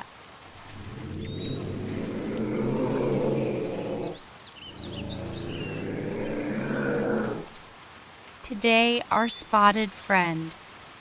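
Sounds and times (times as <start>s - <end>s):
ocelot low rough call: 0.6s - 7.6s.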